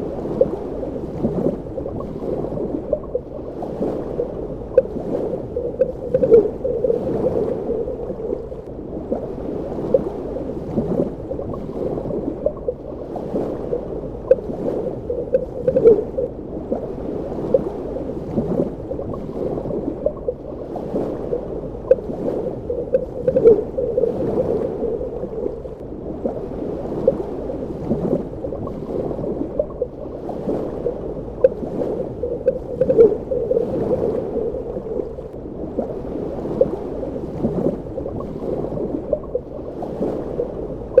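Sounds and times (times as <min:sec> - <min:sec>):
underwater moving water: 0:00.0 - 0:41.0
bubbling and gurgling pops: 0:00.3 - 0:09.2, 0:13.5 - 0:16.3, 0:18.3 - 0:25.9, 0:27.8 - 0:30.0, 0:30.6 - 0:36.0.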